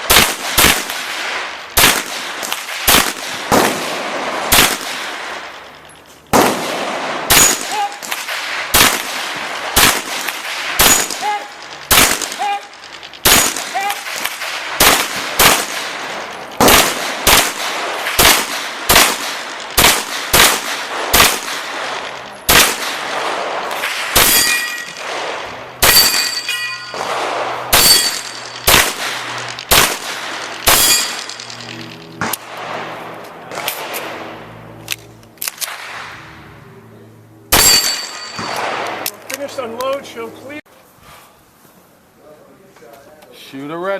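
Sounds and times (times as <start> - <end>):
pistol shots: 0.0 - 5.7, 6.3 - 34.4, 37.5 - 39.2
steel targets ringing: 24.0 - 25.1, 25.8 - 28.7, 30.3 - 32.0, 37.5 - 38.8.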